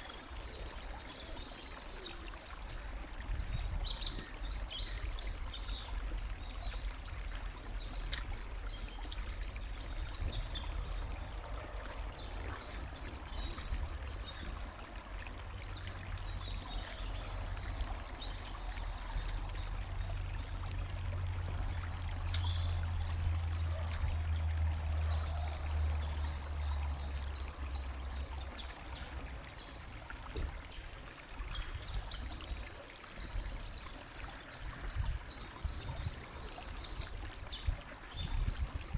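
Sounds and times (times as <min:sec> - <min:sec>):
water trickling: 0:00.0 - 0:38.9
birds chirping: 0:07.6 - 0:20.6, 0:21.4 - 0:29.7
songbird singing rapid notes: 0:21.5 - 0:23.9, 0:31.4 - 0:38.9.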